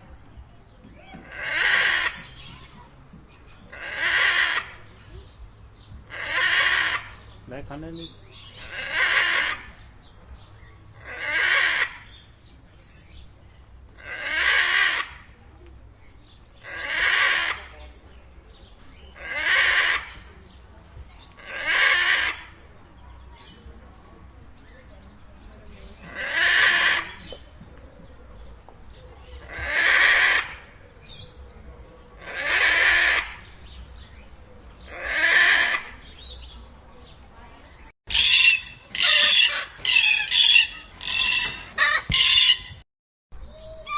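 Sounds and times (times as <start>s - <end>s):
macaw squawking: 8.4s - 9.7s, 38.1s - 42.8s.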